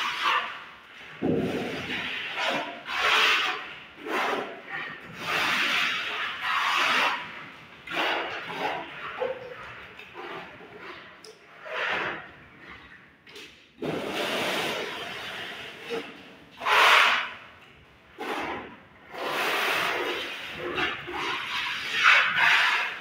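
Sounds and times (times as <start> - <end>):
trowel scraping wet mortar: 1.4 - 13.0, 18.2 - 23.0.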